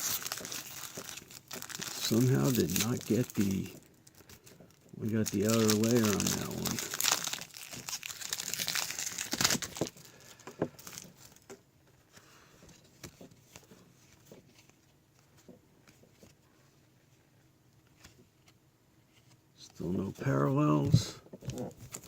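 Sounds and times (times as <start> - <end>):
card pack wrapper tearing: 0.0 - 11.4.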